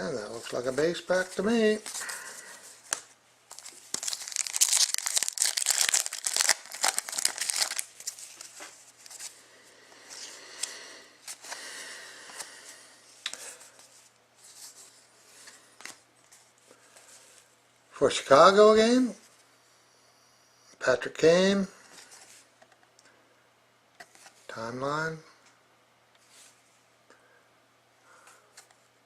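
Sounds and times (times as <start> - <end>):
wrapper tearing and crinkling: 3.5 - 8.5.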